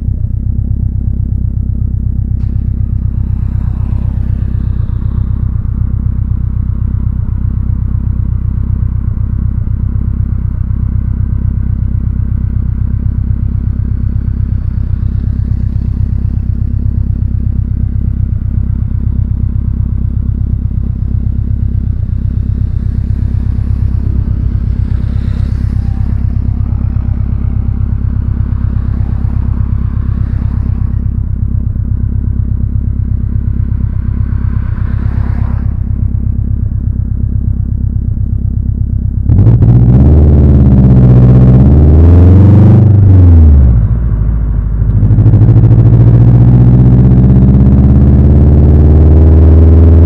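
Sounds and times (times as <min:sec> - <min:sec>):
car engine idling and revving: 0:00.0 - 0:50.0.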